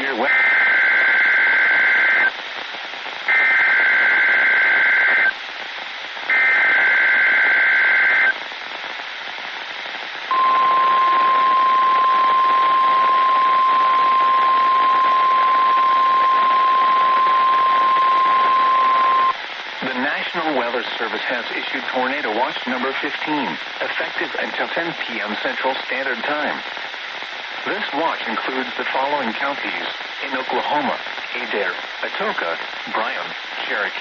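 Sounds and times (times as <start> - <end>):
radio static: 0.0 - 34.0
buzzy two-tone data bursts: 10.3 - 19.4
steady warning alarm tone: 10.3 - 19.4.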